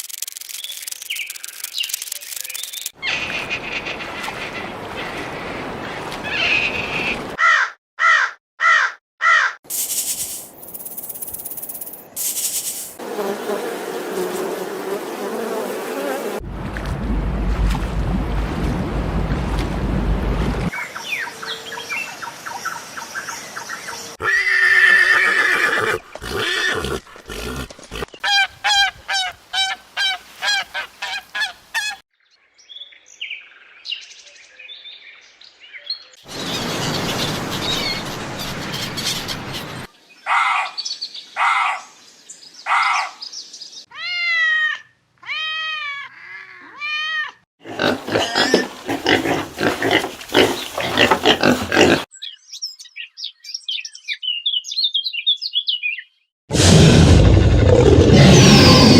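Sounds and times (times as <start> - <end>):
bird calls: 35.9 - 41.9.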